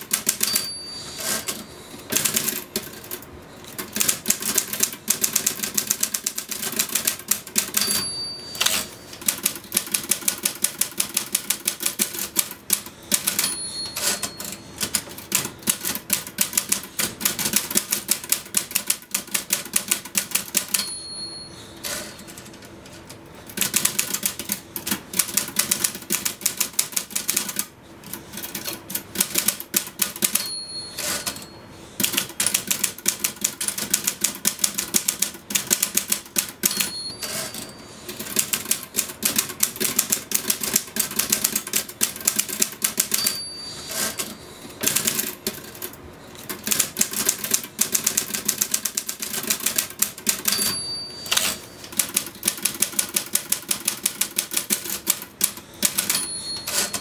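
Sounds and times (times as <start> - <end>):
typewriter carriage return: 0.0 - 21.0, 21.8 - 57.0
typewriter typing: 0.0 - 21.0, 21.8 - 57.0
typewriter bell ding: 0.1 - 2.5, 7.0 - 10.2, 12.9 - 15.6, 20.4 - 22.5, 29.2 - 31.6, 35.7 - 38.8, 42.3 - 45.2, 49.5 - 57.0.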